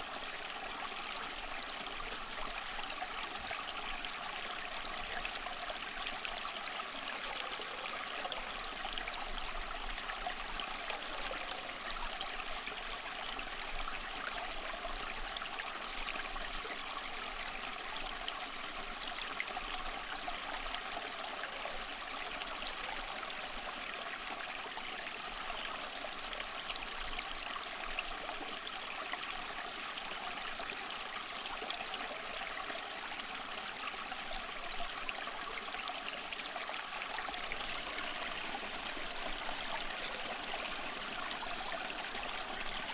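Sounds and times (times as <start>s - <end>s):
stream of running water: 0.0s - 42.9s.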